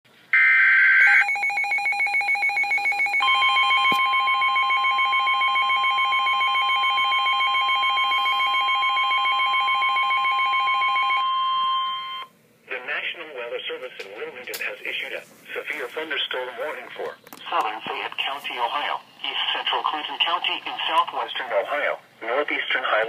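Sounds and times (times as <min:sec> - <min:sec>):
steady warning alarm tone: 0:00.4 - 0:12.3.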